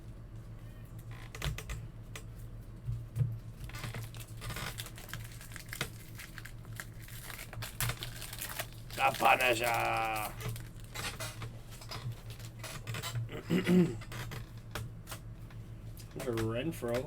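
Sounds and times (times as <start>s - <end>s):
plastic wrapper crinkling and tearing: 3.7s - 11.3s, 12.1s - 12.6s
cards being handled: 8.3s - 10.4s.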